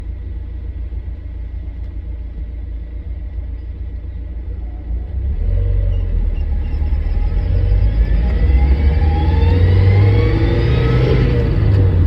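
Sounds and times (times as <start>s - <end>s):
vehicle engine low rumble: 0.0s - 12.0s.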